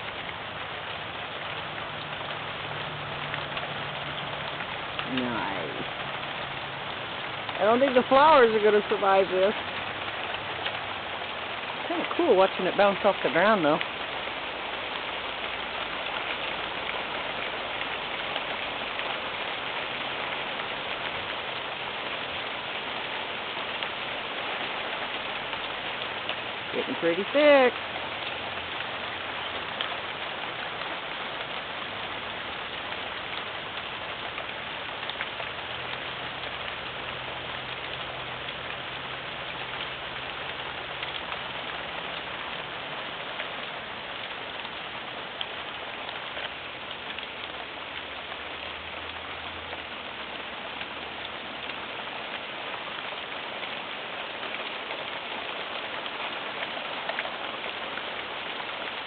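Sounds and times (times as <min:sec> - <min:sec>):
hailstones ticking: 0:00.0 - 0:59.0
hiss of falling hail and rain: 0:00.0 - 0:59.0.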